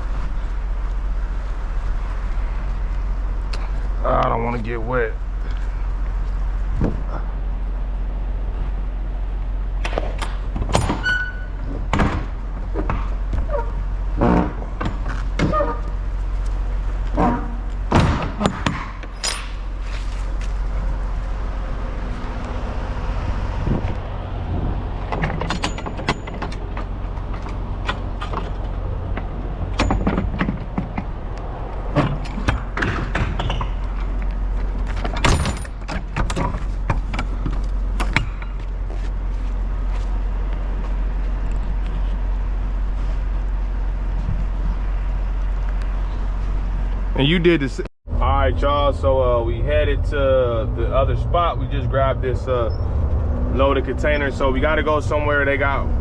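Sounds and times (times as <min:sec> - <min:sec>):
diesel truck engine idling: 0:00.0 - 0:10.6, 0:19.6 - 0:25.2
irregular clunks and knocks: 0:09.8 - 0:13.6, 0:25.0 - 0:31.2.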